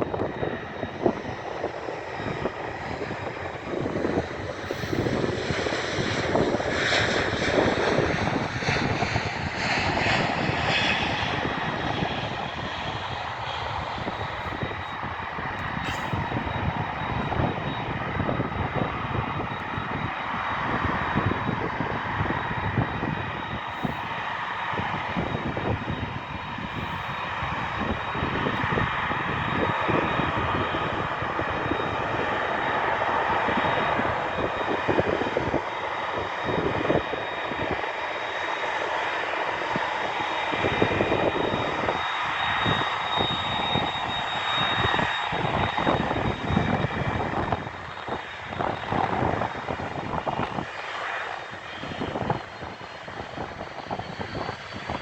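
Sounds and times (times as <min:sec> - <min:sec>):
jet engines idling: 0:00.0 - 0:55.0.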